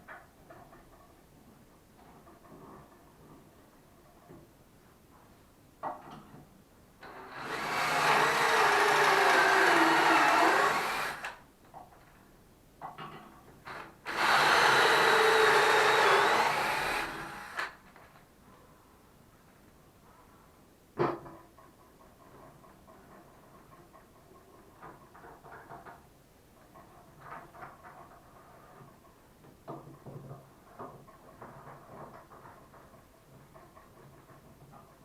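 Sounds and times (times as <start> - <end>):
electric power tool running: 7.0 - 11.4, 13.7 - 17.8.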